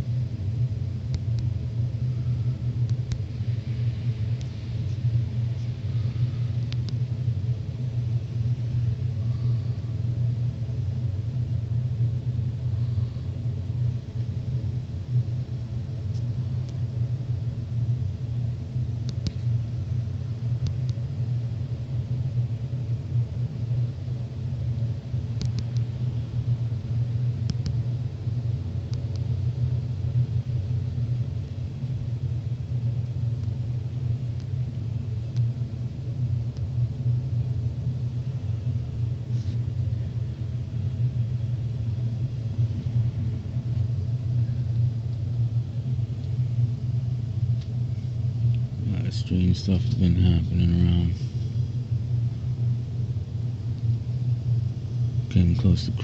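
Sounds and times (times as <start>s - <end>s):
low rumbling hum: 0.0s - 56.0s.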